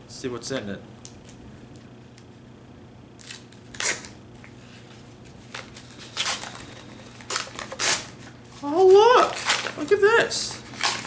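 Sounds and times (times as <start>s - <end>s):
paper rustling: 4.6s - 11.0s.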